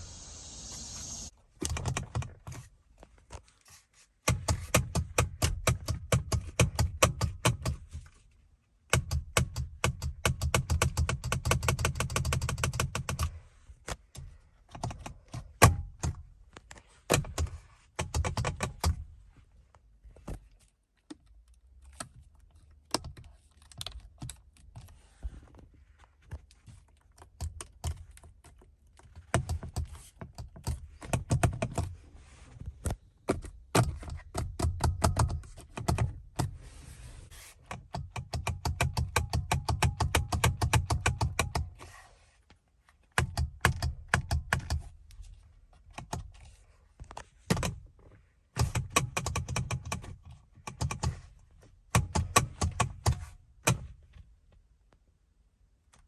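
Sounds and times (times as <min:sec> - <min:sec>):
rapid clicking and tapping: 0:09.0 - 0:13.3, 0:37.9 - 0:41.7.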